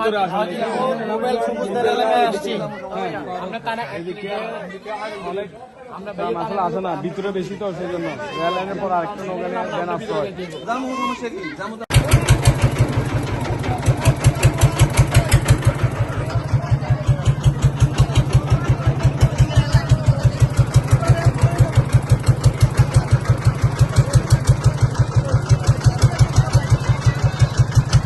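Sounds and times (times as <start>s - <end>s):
faint voices: 7.8s - 28.0s
boat engine running: 11.9s - 28.0s.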